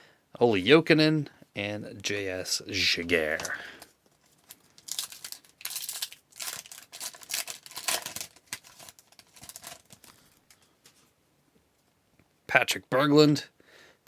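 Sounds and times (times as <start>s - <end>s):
plastic wrapper crinkling and tearing: 3.2s - 10.7s.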